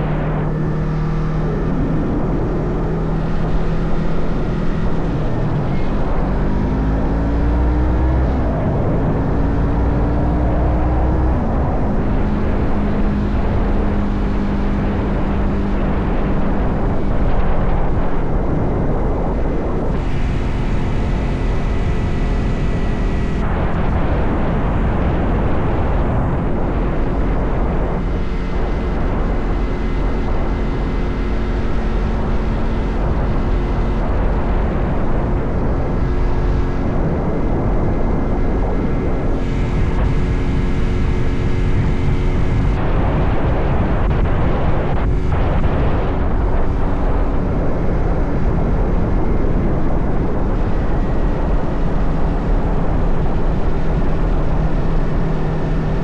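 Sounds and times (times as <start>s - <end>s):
motorcycle engine at speed: 0.0s - 56.0s
wind rush: 0.0s - 56.0s.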